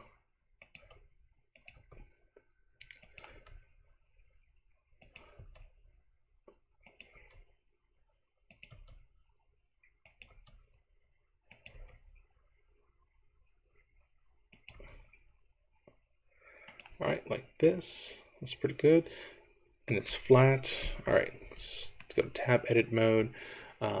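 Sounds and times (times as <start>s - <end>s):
mouse and keyboard clicking: 0.6s - 2.0s, 2.8s - 3.6s, 5.0s - 5.7s, 6.8s - 7.5s, 8.5s - 9.0s, 10.0s - 10.7s, 11.5s - 12.3s, 14.5s - 15.0s, 16.7s - 17.0s.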